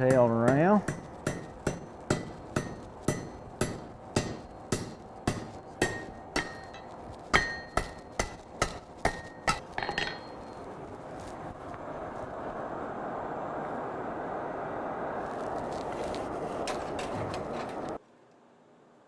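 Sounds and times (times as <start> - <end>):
hammer striking steel on anvil: 0.0 - 10.6.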